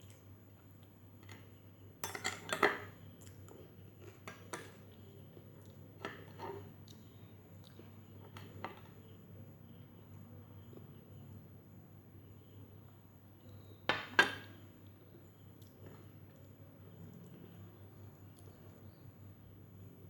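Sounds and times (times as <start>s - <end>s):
cutlery clinking against a dish: 2.0s - 2.9s.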